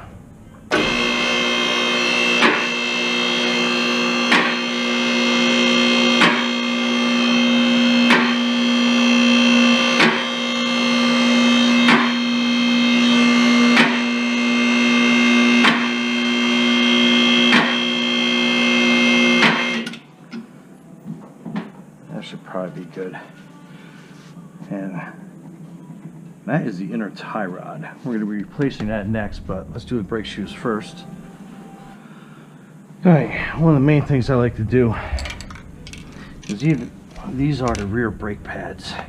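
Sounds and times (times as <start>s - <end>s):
car lift motor humming: 0.0s - 19.9s, 28.4s - 39.0s.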